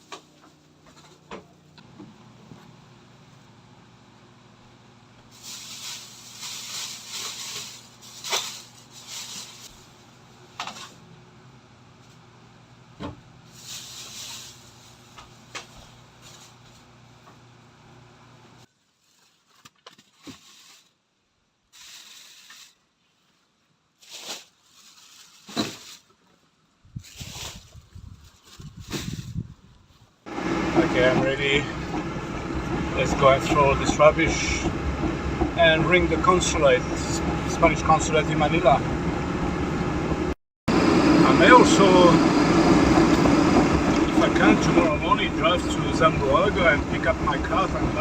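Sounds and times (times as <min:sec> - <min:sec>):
rustling handling noises: 0:05.3 - 0:11.0, 0:13.5 - 0:16.9, 0:18.7 - 0:21.1, 0:21.7 - 0:30.2
steady low hum: 0:30.3 - 0:48.0.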